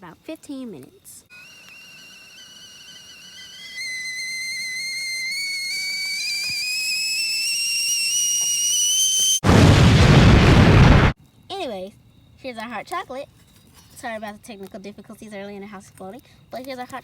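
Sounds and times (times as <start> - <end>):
kettle whistling: 1.3 - 9.4
loud explosion-like blast: 9.4 - 11.2.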